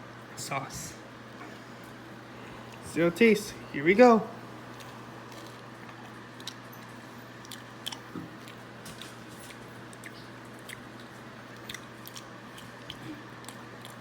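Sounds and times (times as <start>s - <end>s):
person chewing food: 4.5s - 14.0s.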